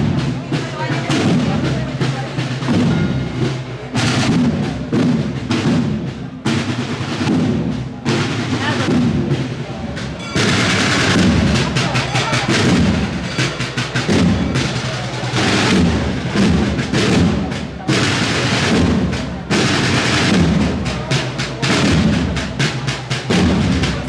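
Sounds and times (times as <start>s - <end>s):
music with drums beating: 0.0s - 24.0s.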